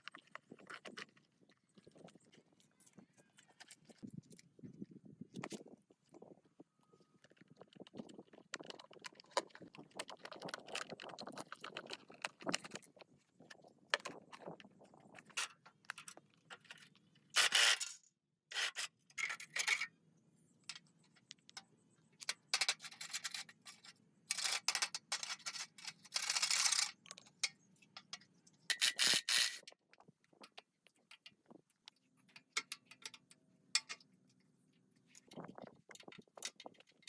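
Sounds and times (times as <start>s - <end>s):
clicks and clinks of metal parts: 15.2s - 19.9s, 20.6s - 29.8s, 32.3s - 34.1s, 35.1s - 37.0s
scraping or rubbing noise: 17.4s - 19.8s, 28.8s - 29.7s.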